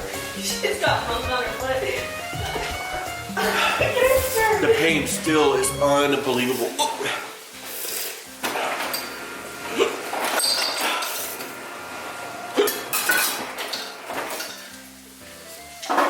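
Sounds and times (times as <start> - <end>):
dishes and cutlery clinking: 2.4 - 4.9, 6.6 - 11.5, 12.6 - 14.8, 15.7 - 16.0.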